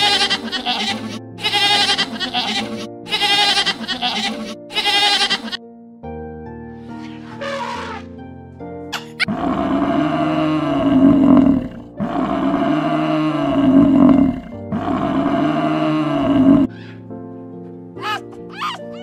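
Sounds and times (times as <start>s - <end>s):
deep animal calls: 0.0s - 5.6s, 7.3s - 8.1s, 9.2s - 17.1s
background music: 0.0s - 19.0s.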